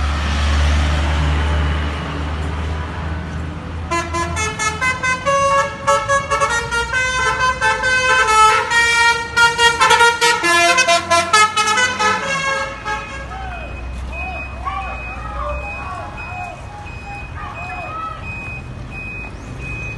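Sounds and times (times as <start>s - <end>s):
bus engine running: 0.0s - 19.9s
musical bus horn melody: 3.9s - 13.4s.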